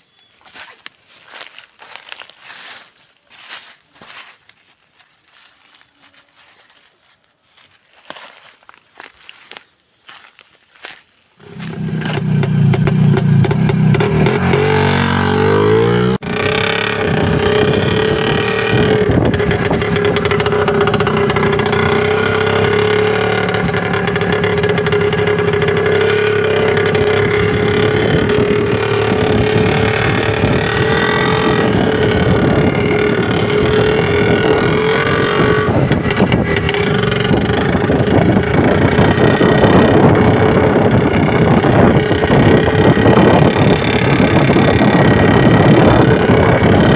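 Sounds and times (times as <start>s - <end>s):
two-stroke motorcycle engine running: 11.4s - 46.9s.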